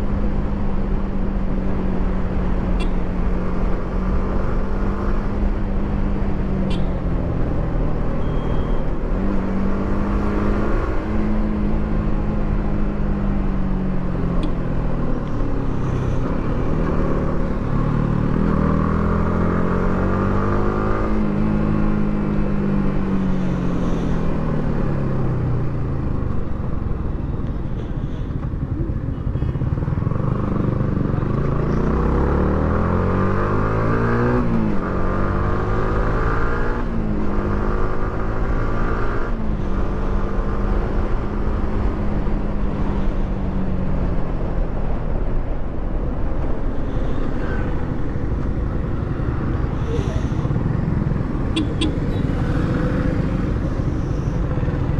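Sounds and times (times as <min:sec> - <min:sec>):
motorcycle engine revving: 0:46.7 - 0:54.9.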